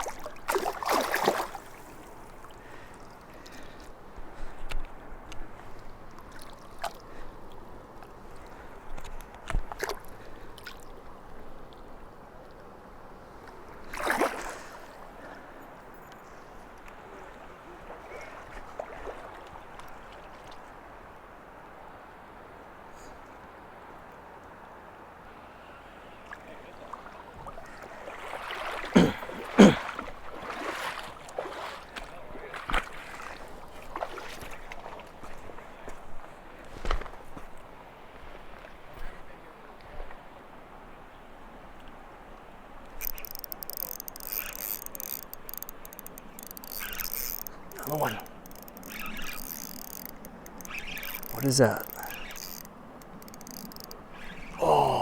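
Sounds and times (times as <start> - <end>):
water splash: 0.0 - 2.2, 13.9 - 14.9, 28.1 - 35.0
river water flowing: 0.0 - 55.0
clicks: 43.0 - 54.0.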